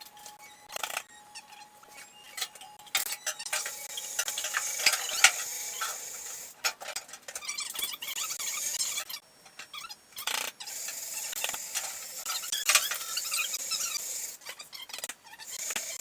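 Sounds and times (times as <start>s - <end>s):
welder crackling sizzle: 2.0s - 6.9s, 15.5s - 16.0s.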